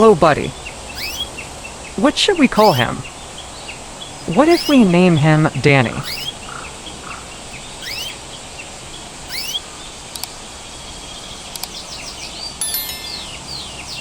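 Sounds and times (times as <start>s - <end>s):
canary chirping: 0.0s - 14.0s
sharp ticks: 0.9s - 1.4s, 2.6s - 2.9s, 4.2s - 5.0s, 6.0s - 8.2s, 9.3s - 10.4s, 11.5s - 11.8s.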